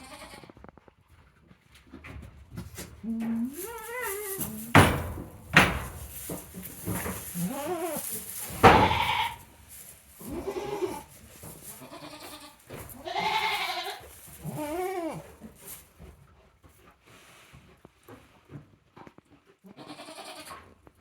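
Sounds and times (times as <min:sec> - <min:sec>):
goats bleating: 0:03.0 - 0:15.4, 0:19.8 - 0:20.5.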